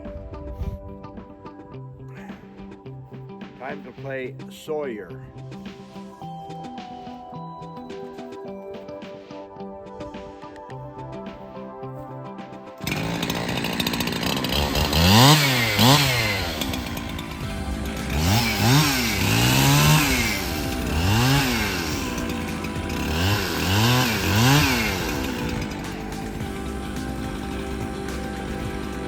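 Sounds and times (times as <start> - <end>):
chainsaw engine revving: 12.8 - 29.0.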